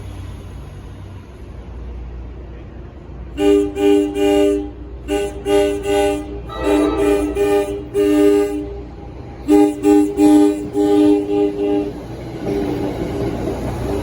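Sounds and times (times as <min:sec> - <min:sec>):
locomotive air horn blasts: 0:03.4 - 0:12.0
locomotive low rumble: 0:04.7 - 0:14.0.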